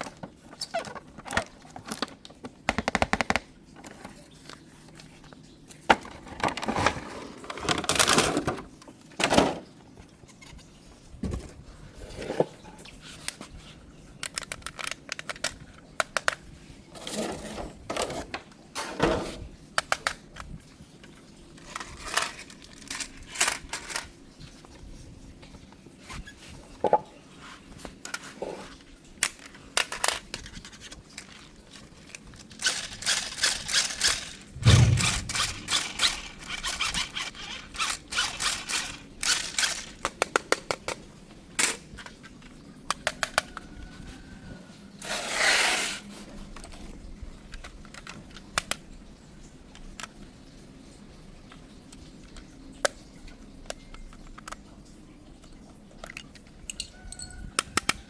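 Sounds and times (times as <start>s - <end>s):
packaging clicks and knocks: 1.3s - 3.4s.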